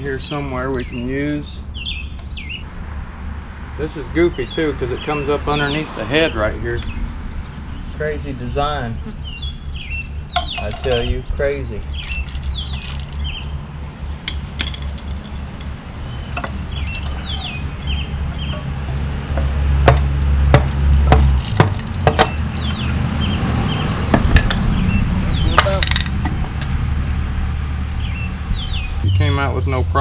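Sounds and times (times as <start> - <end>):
hand tools clinking on metal: 10.3 - 13.4, 14.2 - 17.6, 18.4 - 22.9, 25.5 - 26.8.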